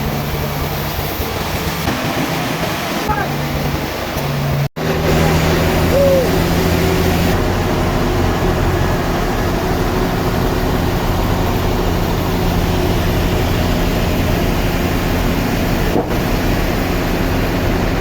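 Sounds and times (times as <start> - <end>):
sawmill machinery drone: 0.0 - 18.0.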